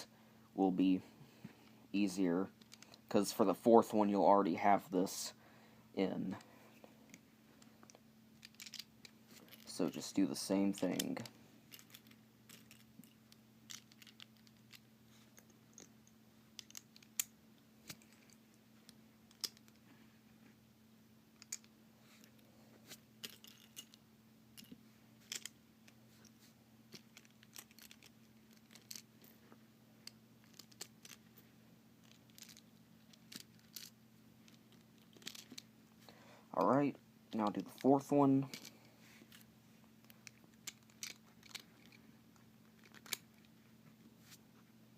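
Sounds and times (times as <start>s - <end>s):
faint low hum: 0.0s - 44.9s
plastic cube pieces clicking: 11.7s - 14.8s, 16.6s - 17.3s, 19.3s - 19.8s, 26.9s - 29.0s, 30.0s - 31.2s, 32.0s - 33.9s, 34.5s - 35.6s, 40.0s - 42.0s, 42.7s - 43.5s.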